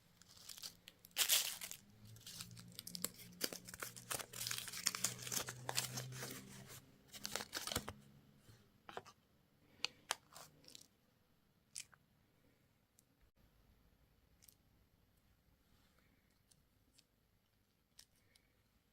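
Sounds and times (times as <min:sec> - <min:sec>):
crinkly packaging tearing: 0:00.2 - 0:08.0.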